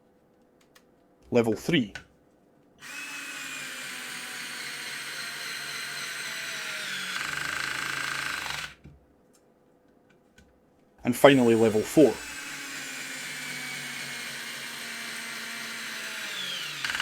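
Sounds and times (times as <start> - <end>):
cordless screwdriver whining: 2.8 - 8.8, 11.3 - 17.0.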